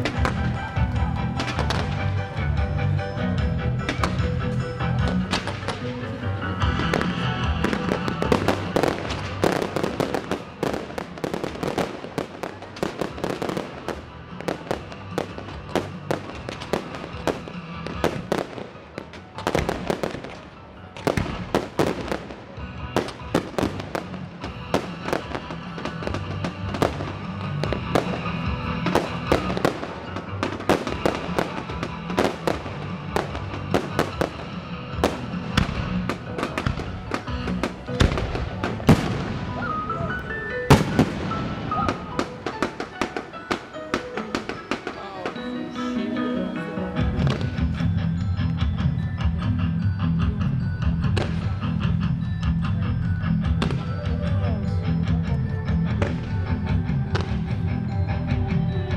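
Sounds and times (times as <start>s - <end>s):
fireworks bursts and bangs: 0.0s - 2.6s, 3.7s - 45.5s
music soundtrack: 0.0s - 58.9s.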